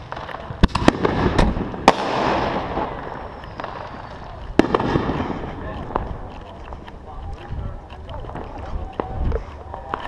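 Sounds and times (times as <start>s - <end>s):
fireworks bangs: 0.0s - 7.5s.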